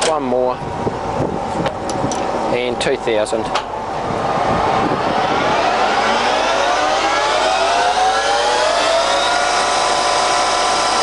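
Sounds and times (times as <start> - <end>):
lathe gear whine rising: 3.7 - 11.0.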